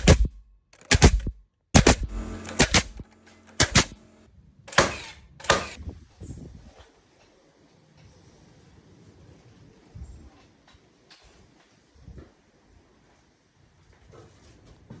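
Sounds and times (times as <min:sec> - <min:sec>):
hammer striking timber: 0:00.8 - 0:05.8.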